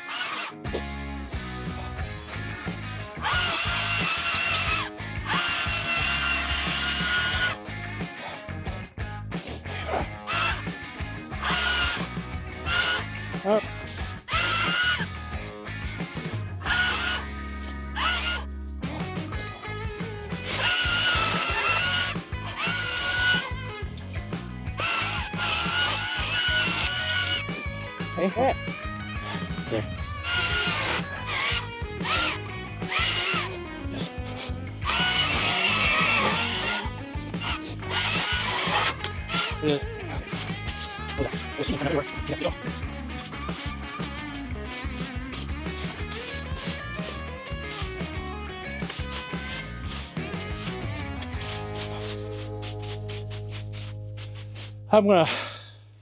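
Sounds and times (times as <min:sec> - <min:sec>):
power tool motor whining: 0:00.0 - 0:00.6, 0:03.2 - 0:07.6, 0:10.3 - 0:10.6, 0:11.4 - 0:12.1, 0:12.7 - 0:13.1, 0:14.1 - 0:15.2, 0:16.6 - 0:17.3, 0:18.0 - 0:18.5, 0:20.5 - 0:23.5, 0:24.8 - 0:27.5, 0:30.2 - 0:33.6, 0:34.8 - 0:39.7, 0:40.3 - 0:41.5, 0:42.1 - 0:54.7
background music: 0:00.1 - 0:55.3.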